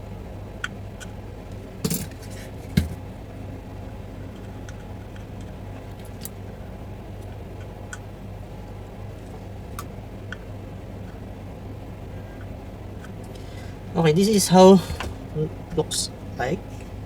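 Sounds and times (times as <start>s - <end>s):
steady low hum: 0.0s - 17.0s
hand tools clicking and tapping: 1.6s - 3.0s.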